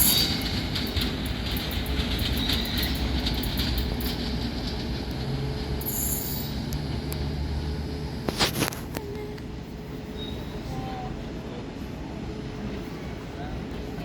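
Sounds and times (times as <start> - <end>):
diesel train rumbling: 0.0 - 14.0
high wheel squeal: 5.8 - 6.7, 10.1 - 10.7.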